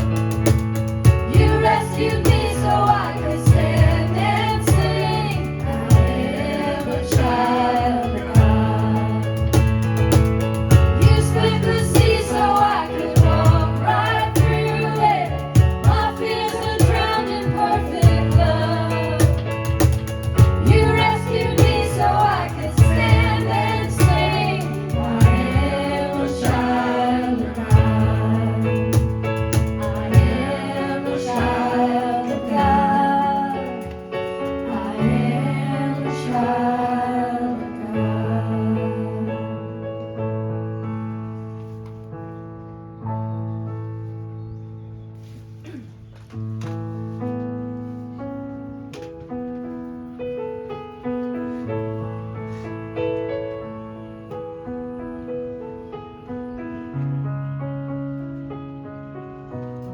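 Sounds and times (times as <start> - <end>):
band with bass and beat: 0.0 - 34.7
people singing worship music: 0.0 - 40.0, 52.4 - 52.7.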